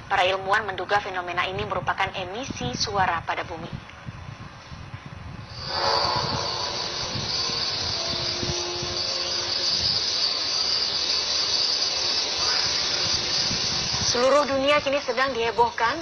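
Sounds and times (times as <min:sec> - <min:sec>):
high-pitched insect-like hiss: 0:05.4 - 0:16.0.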